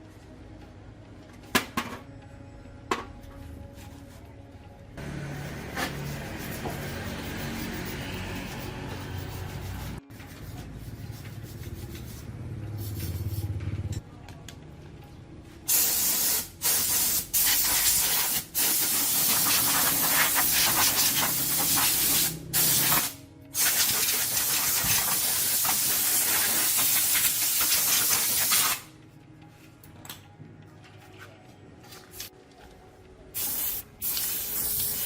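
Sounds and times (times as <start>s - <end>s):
pressurised spray hissing: 33.4s - 35.0s.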